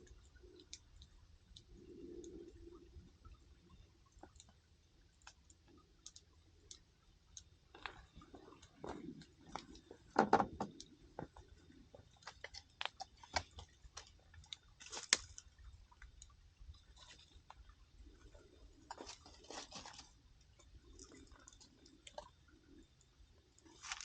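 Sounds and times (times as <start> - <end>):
firewood crackling and popping: 5.2 - 22.4, 23.6 - 24.0.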